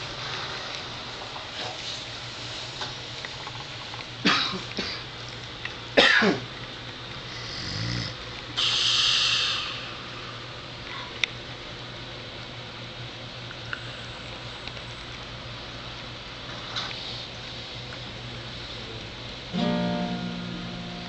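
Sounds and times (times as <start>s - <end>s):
man snoring heavily: 7.3s - 8.2s.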